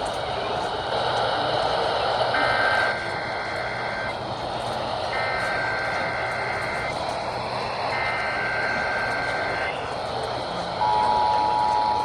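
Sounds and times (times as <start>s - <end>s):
radio static hiss: 0.0s - 12.0s
two-tone digital data bursts: 2.4s - 4.1s.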